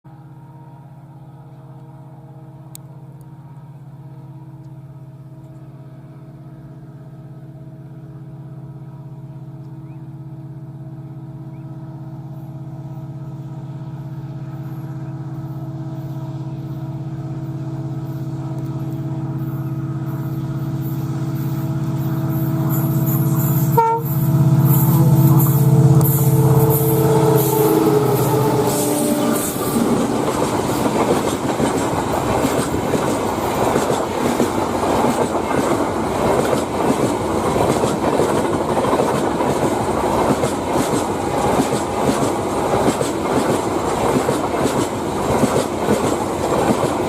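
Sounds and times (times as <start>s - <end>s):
diesel locomotive engine drone: 0.0s - 47.0s
higher rushing noise: 18.2s - 35.1s.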